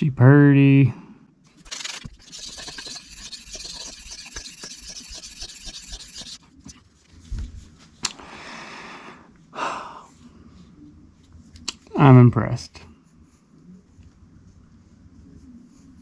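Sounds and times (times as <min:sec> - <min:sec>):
knife scraping on whetstone: 0:01.6 - 0:06.4.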